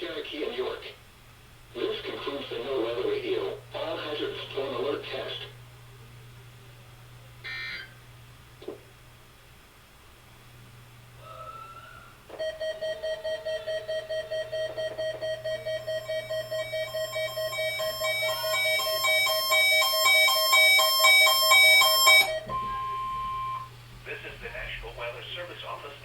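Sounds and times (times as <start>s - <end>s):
higher alarm beep patterns: 12.3s - 23.7s
rapid pulsed electronic beeping: 12.4s - 23.7s.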